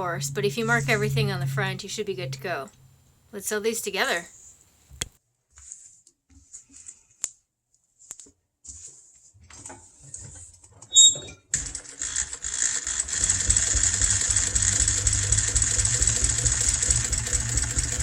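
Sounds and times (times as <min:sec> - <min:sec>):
sewing machine stitching: 0:11.6 - 0:18.0.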